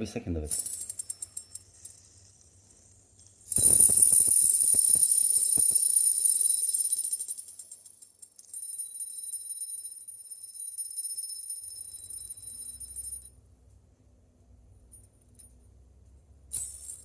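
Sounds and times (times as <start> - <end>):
fidget spinner metallic ringing: 0.5 - 2.2, 3.5 - 13.3.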